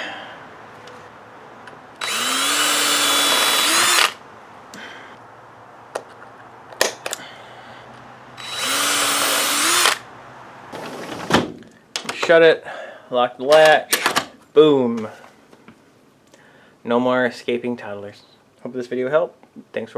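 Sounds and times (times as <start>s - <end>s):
power drill spinning: 2.0s - 4.2s, 8.4s - 10.1s.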